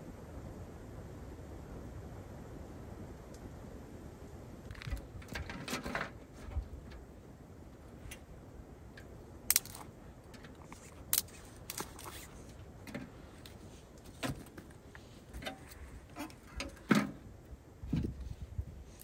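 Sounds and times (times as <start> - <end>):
low steady rumble: 0.0 - 19.0
small objects clicking and knocking: 9.0 - 13.6.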